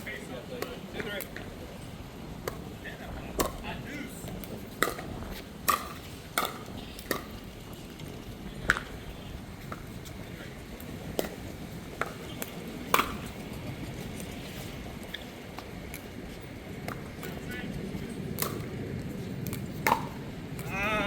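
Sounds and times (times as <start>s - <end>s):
paddles striking plastic ball: 19.5s - 20.8s.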